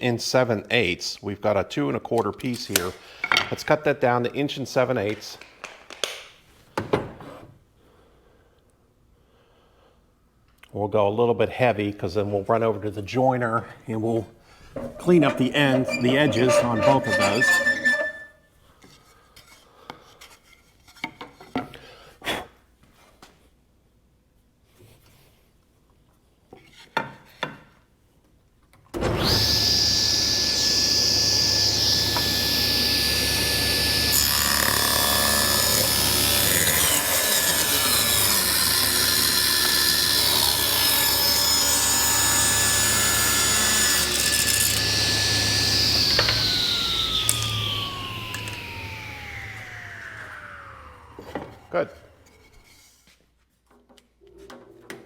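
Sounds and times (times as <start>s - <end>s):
power saw cutting board: 14.8s - 18.3s, 29.0s - 52.5s.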